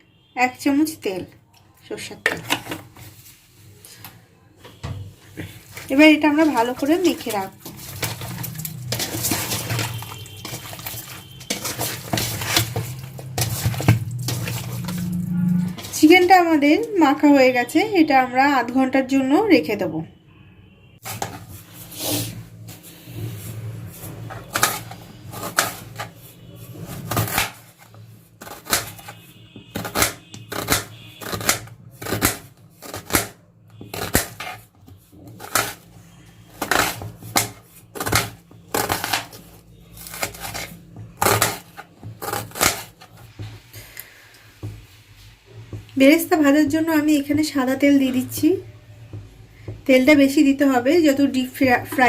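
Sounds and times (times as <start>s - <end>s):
kitchen things knocking and clicking: 2.2s - 3.0s, 5.8s - 15.0s.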